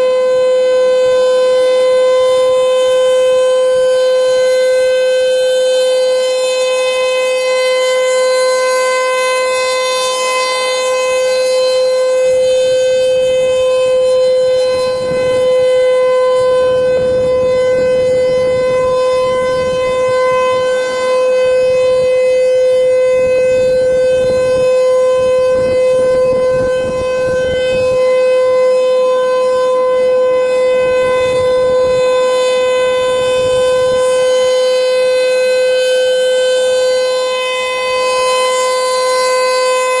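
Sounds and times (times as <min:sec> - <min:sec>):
tornado siren steady tone: 0:00.0 - 0:40.0.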